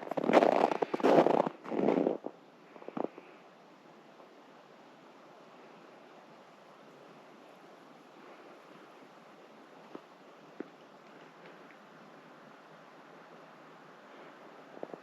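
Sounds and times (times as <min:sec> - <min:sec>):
footsteps crunching on snow: 0:00.0 - 0:02.3
faint outdoor hiss: 0:00.0 - 0:15.0.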